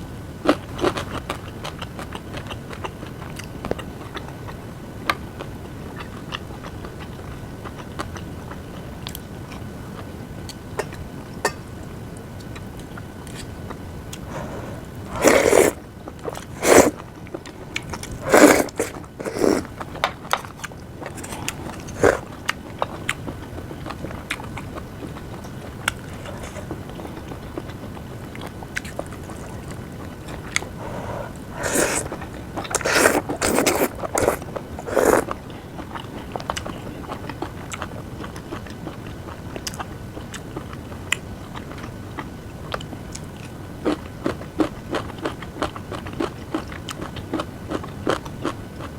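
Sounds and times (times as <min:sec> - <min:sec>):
chewing and mouth sounds: 0:12.4 - 0:48.9
small mouth clicks: 0:21.1 - 0:22.2.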